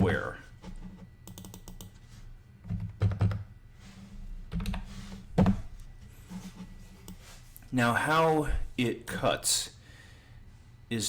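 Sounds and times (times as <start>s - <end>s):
low steady hum: 0.0s - 11.0s
keyboard typing: 1.2s - 2.0s.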